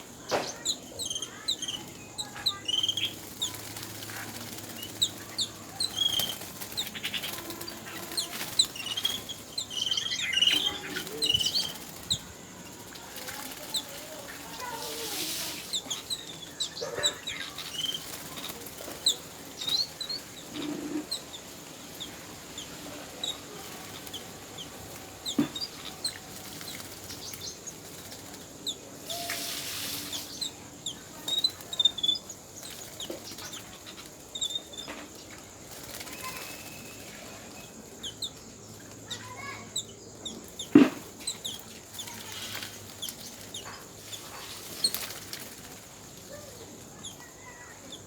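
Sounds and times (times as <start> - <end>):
birds chirping: 0.0 - 48.0
wing flapping: 0.1 - 39.7, 40.4 - 47.8.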